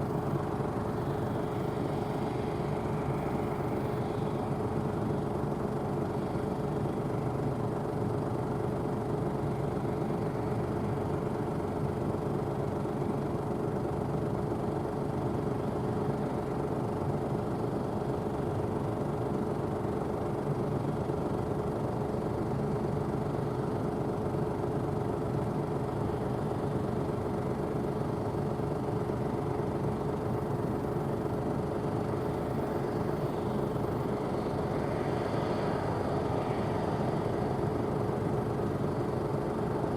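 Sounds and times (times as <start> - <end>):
combine harvester drone: 0.0 - 39.9.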